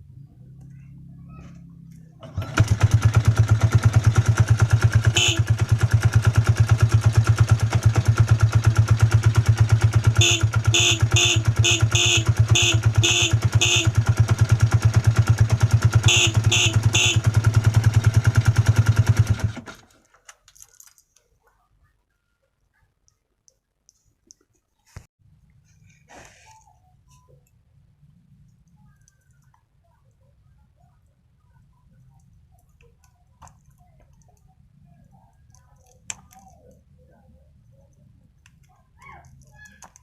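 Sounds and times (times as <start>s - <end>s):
motorcycle engine idling: 0.2s - 19.9s
motorcycle horn short beeps: 4.7s - 5.9s, 10.0s - 14.4s, 15.9s - 17.9s.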